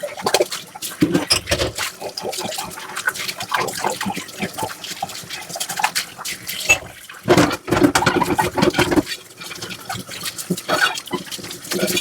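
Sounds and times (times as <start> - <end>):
running water: 0.0 - 12.0
scrubbing dishes: 1.0 - 2.6, 5.4 - 12.0.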